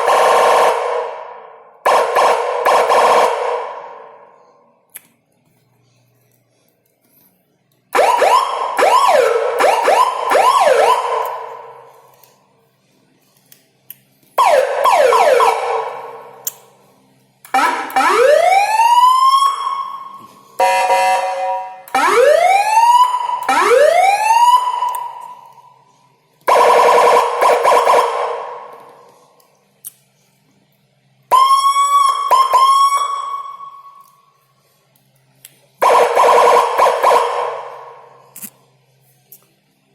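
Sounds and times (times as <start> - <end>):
electronic siren bursts: 0.0 - 4.2, 7.9 - 11.9, 14.4 - 16.4, 17.5 - 25.6, 26.5 - 29.0, 31.3 - 34.0, 35.8 - 38.1.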